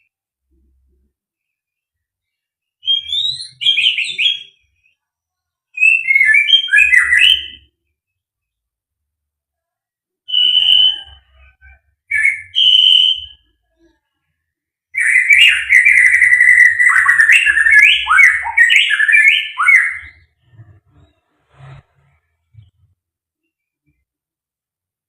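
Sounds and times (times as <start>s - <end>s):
bird singing: 1.8s - 5.0s, 5.8s - 7.7s, 15.0s - 21.2s.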